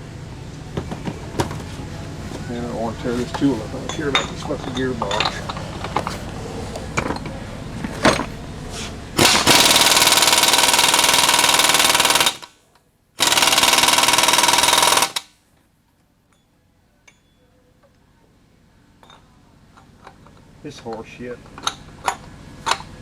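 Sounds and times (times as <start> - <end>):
tools clattering: 0.8 - 8.4, 9.2 - 10.6
impact wrench hammering: 9.2 - 12.5, 13.2 - 15.3.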